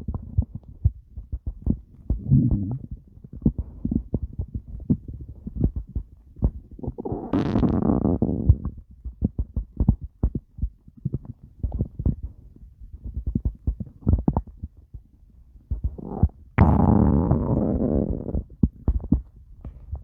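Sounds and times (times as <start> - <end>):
stomach gurgles and pops: 0.0 - 20.0
stomach growling: 1.4 - 9.9, 15.7 - 19.3.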